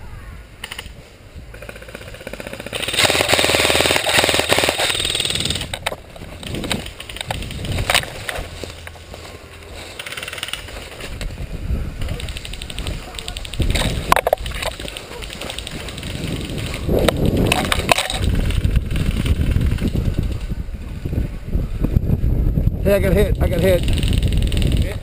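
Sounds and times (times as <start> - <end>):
airsoft gun automatic fire: 1.5 - 5.8, 12.0 - 16.8, 23.8 - 24.8.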